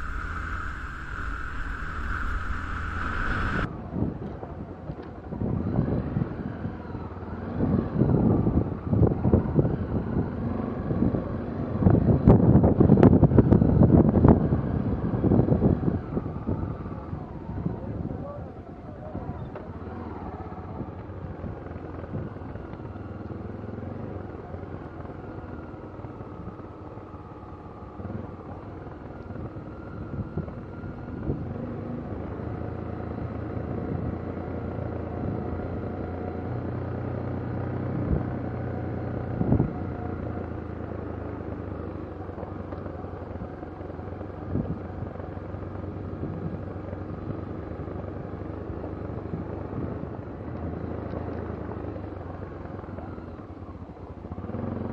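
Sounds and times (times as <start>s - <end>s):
motor droning: 0.0s - 3.7s.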